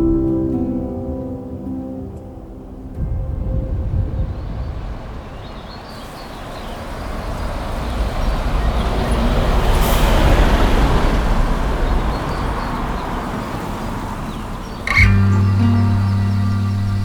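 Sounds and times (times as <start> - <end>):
wind rush: 3.0 - 12.9.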